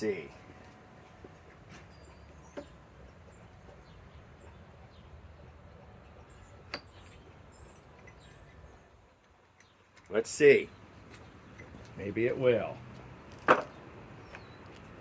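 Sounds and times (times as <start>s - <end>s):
faint bird chirp: 1.4s - 9.9s.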